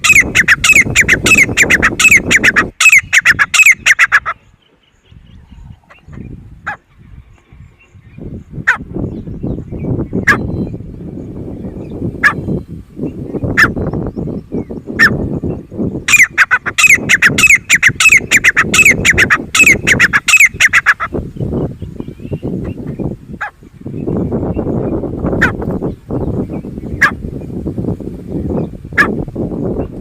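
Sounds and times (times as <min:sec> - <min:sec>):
francolin calling: 0:00.0 - 0:06.9, 0:09.4 - 0:25.6.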